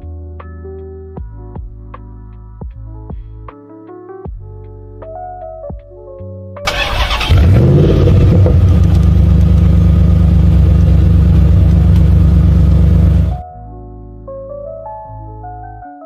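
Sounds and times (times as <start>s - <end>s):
car engine starting and running: 6.7s - 13.4s.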